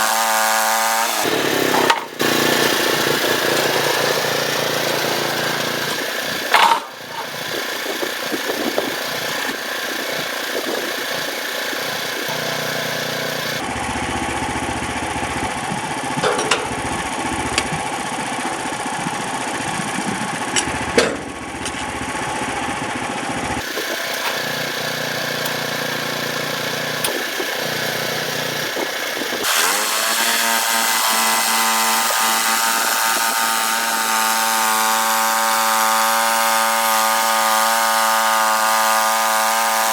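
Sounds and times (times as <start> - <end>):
band saw blade sawing wood: 0.0 - 13.7, 23.6 - 39.9
small gas engine running: 0.0 - 39.9.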